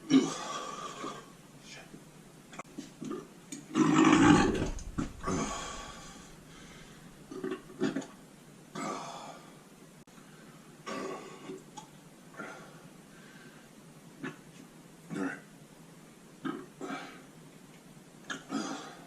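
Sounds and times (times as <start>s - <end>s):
man burping: 0.0s - 1.1s, 15.1s - 15.5s, 18.3s - 19.0s
throat and breath sounds: 4.2s - 8.0s.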